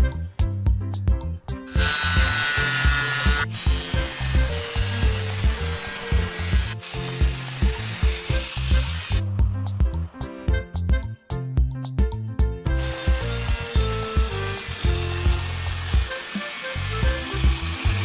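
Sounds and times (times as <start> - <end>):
music with steady beat: 0.0 - 18.0
arc welding hiss: 1.8 - 9.2, 12.8 - 18.0.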